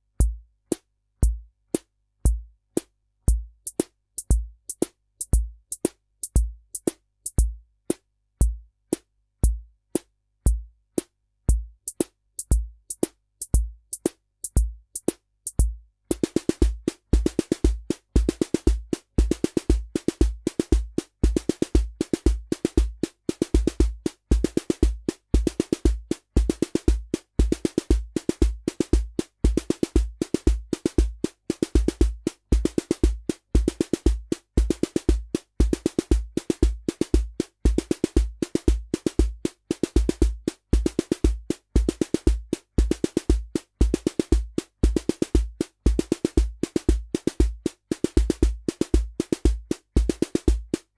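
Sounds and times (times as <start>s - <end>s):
bass drum beat: 0.0s - 1.6s, 2.2s - 7.6s, 8.4s - 9.8s, 10.5s - 10.8s, 11.5s - 50.9s
hi-hat clicks: 0.2s - 50.9s.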